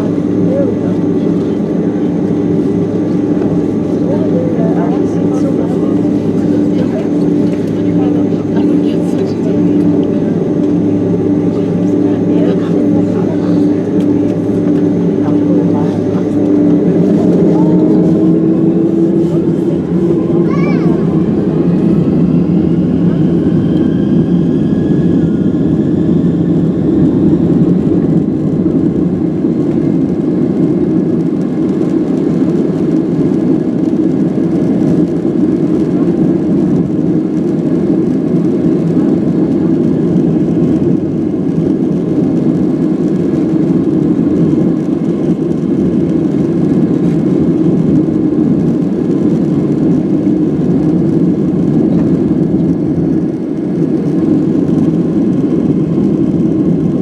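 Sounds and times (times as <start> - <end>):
faint engine whine: 0.0 - 57.0
jet engine cabin rush: 0.0 - 57.0.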